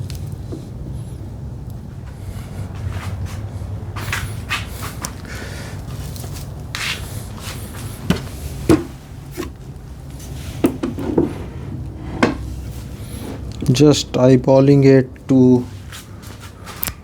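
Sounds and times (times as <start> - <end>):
steady low hum: 0.0 - 17.0
wood brushing scrapes: 2.1 - 13.7
wood knocking against wood: 8.1 - 9.6, 10.6 - 11.4, 12.2 - 12.5.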